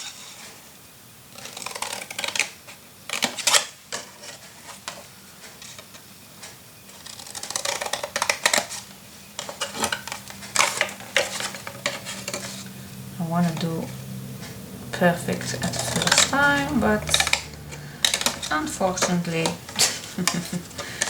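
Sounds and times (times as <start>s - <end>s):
paper rustling: 1.3s - 13.6s, 15.4s - 21.0s
scissors snipping paper: 1.4s - 3.7s, 6.9s - 12.8s, 15.4s - 21.0s.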